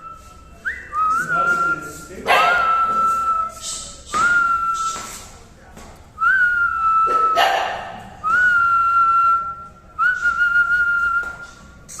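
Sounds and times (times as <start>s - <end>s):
high-pitched whistle tones: 0.0s - 5.2s.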